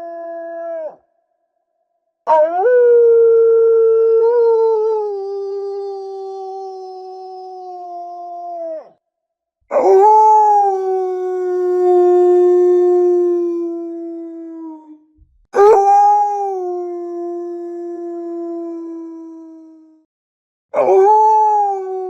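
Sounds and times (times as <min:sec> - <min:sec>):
wolf howling: 0:00.0 - 0:01.0, 0:02.3 - 0:08.9, 0:09.7 - 0:14.9, 0:15.6 - 0:18.8, 0:20.8 - 0:22.0.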